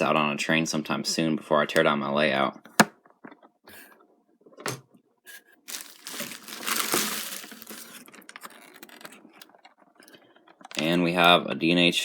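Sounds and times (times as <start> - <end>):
packaging rustling and crinkling: 5.6 - 9.8.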